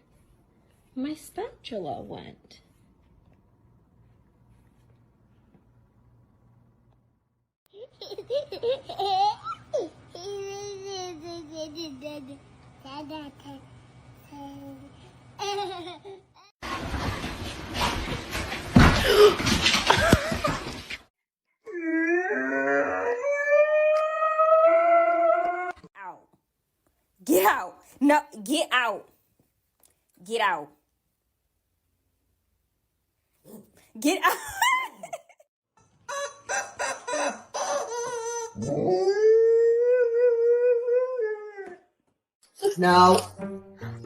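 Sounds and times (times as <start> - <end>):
noisy clatter: 16.6 - 21.1
dog howling: 21.7 - 25.8, 38.6 - 41.8.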